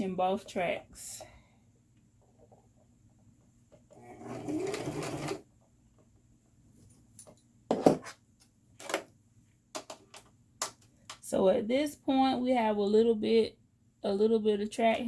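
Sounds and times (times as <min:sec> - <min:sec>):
electric sewing machine running: 0:04.0 - 0:05.4.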